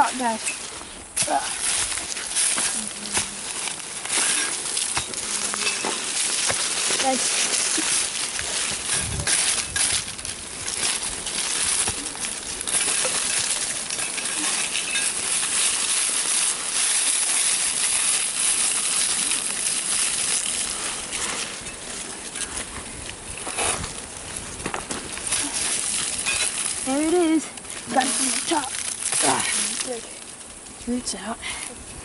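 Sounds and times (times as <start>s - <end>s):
digging tool scraping clay soil: 0.0s - 30.1s
dirt crunching: 0.0s - 30.9s
metal clinks: 6.9s - 22.6s.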